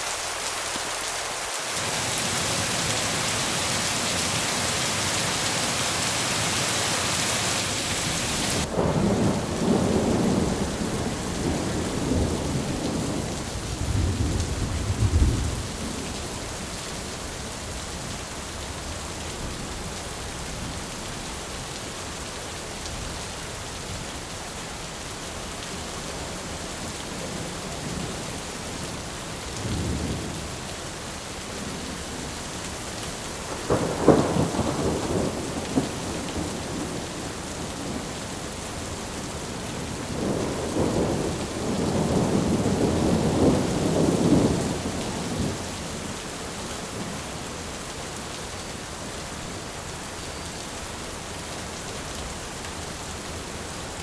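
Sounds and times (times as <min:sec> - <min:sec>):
steady rain: 0:00.0 - 0:54.0
thunder rumbling: 0:01.8 - 0:16.1, 0:33.5 - 0:38.2, 0:39.8 - 0:45.6.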